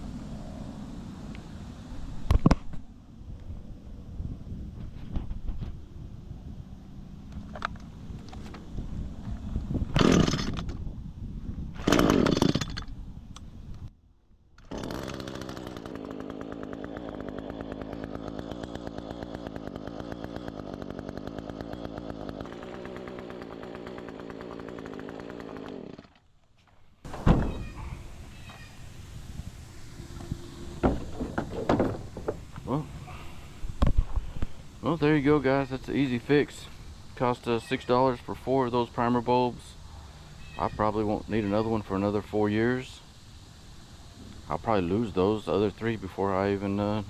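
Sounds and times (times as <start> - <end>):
string trimmer engine: 9.9 - 10.6, 11.8 - 12.8, 14.6 - 26.2, 29.7 - 36.6.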